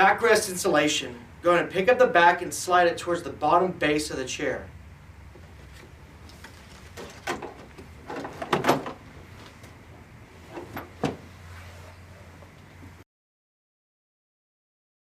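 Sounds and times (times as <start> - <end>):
parts knocking and scraping: 5.4 - 12.7.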